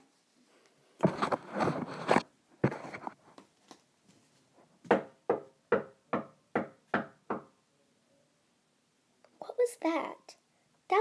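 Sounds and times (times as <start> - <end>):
rustling handling noise: 0.0 - 4.7.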